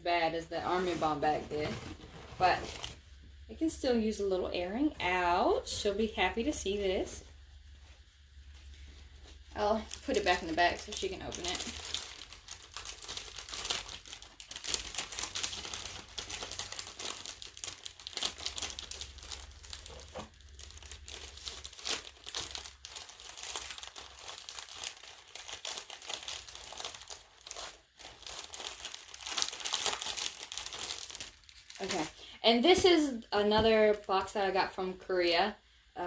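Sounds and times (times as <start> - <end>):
plastic bag crinkling: 0.5 - 3.0, 9.2 - 34.2.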